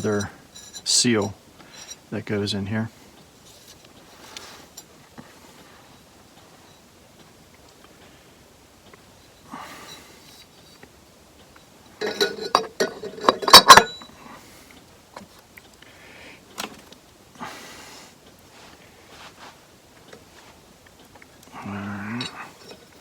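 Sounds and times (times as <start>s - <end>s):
metal parts clinking and knocking: 0.0s - 2.0s, 12.0s - 14.1s, 22.1s - 23.0s
faint rustles: 2.9s - 16.0s, 17.5s - 23.0s.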